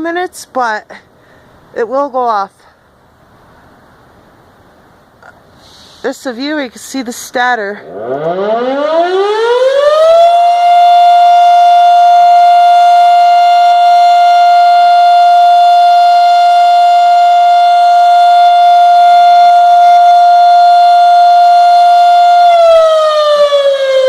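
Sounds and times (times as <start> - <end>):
warning siren wailing: 7.8 - 24.0.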